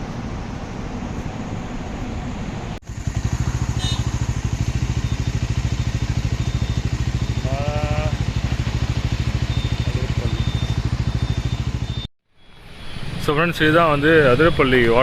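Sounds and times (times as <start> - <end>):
motorcycle riding: 0.0 - 12.1
motorcycle engine idling: 2.8 - 12.1.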